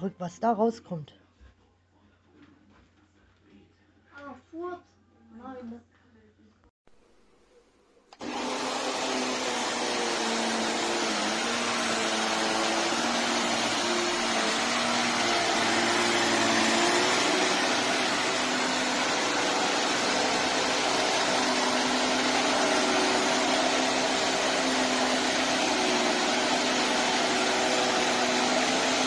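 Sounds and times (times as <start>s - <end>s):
handheld vacuum running: 8.2s - 29.0s.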